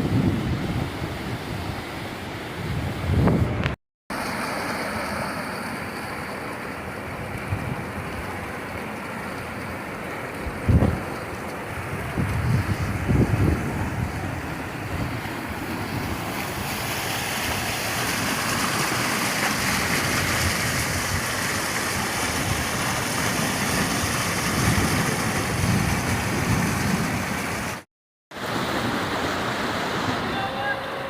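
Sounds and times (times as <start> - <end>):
wind buffeting microphone: 2.6 - 3.8, 10.4 - 18.9, 19.8 - 27.8
rainwater rushing: 4.1 - 31.0.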